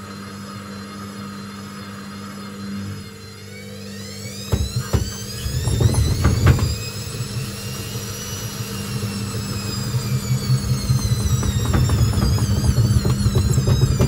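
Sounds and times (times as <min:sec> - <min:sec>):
washing machine motor whine: 0:00.0 - 0:14.0
washing machine knocking: 0:04.4 - 0:08.0, 0:10.4 - 0:14.0.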